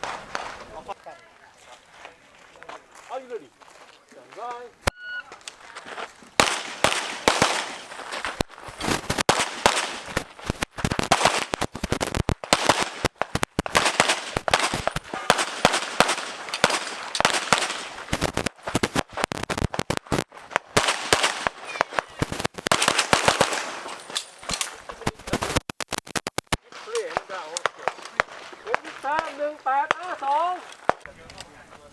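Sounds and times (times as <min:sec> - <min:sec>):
rapid pistol fire: 0:06.4 - 0:07.8, 0:09.0 - 0:23.9.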